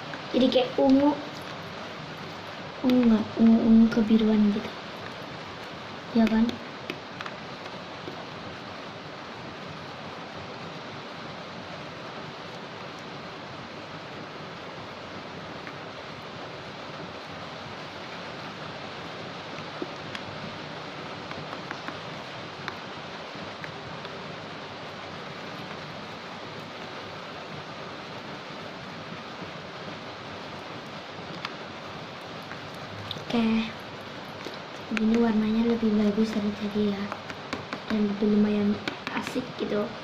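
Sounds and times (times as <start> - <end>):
heavy rain hissing: 0.0 - 40.0
faint clicks and taps: 2.2 - 8.2, 21.2 - 22.9, 31.3 - 31.6, 32.4 - 39.7.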